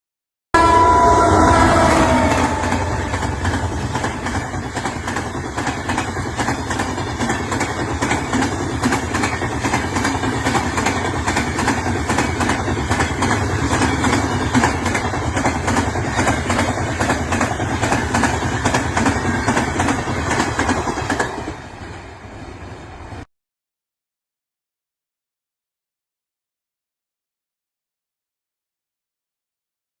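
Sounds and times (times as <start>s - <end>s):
chord of several tones: 0.6s - 3.9s
train wheels clattering on rails: 1.5s - 23.0s.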